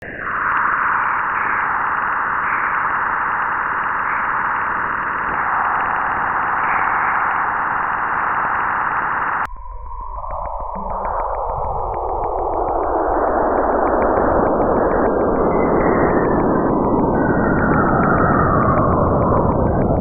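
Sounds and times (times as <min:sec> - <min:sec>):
low rumble: 0:09.4 - 0:20.0.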